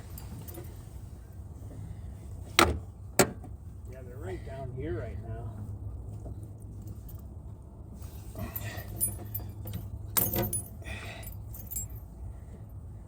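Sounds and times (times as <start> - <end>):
small metal objects jangling: 0.0 - 0.8, 8.3 - 12.1.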